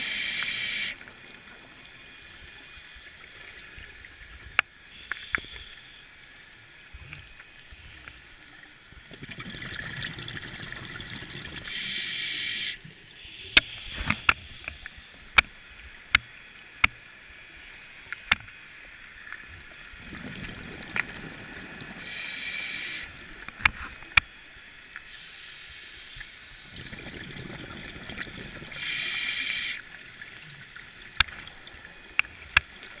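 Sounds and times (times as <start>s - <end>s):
scuba breathing through regulator: 0.0s - 1.0s, 11.6s - 15.2s, 22.0s - 23.2s, 28.7s - 29.9s
exhaled bubbles bursting: 9.1s - 11.7s, 20.0s - 22.0s, 26.7s - 28.8s.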